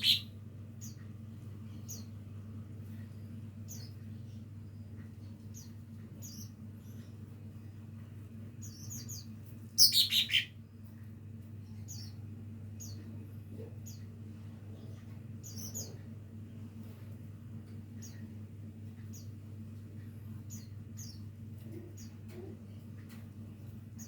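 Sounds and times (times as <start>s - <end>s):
bird chirping: 0.0s - 1.1s, 8.6s - 10.6s
steady low hum: 0.0s - 24.0s.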